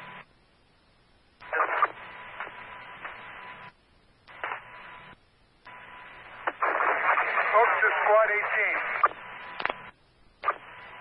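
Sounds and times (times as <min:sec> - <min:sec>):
faint steady radio tone: 0:00.0 - 0:11.0
loud radio burst: 0:01.4 - 0:02.0, 0:06.4 - 0:09.2
radio static hiss: 0:01.4 - 0:11.0.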